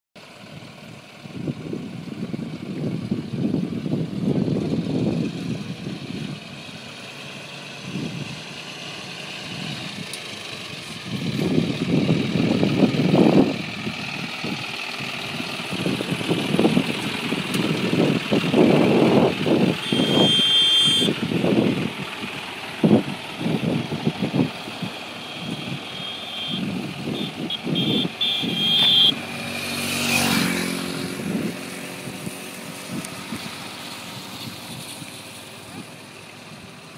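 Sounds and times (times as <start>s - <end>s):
diesel engine revving: 0.2s - 36.9s
high whine: 19.6s - 21.8s.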